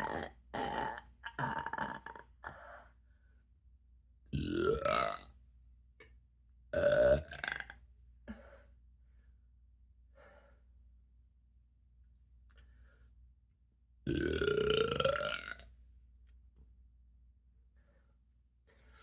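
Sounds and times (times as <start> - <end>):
person burping: 0.0 - 2.5, 4.3 - 5.3, 6.8 - 7.8, 14.1 - 15.6.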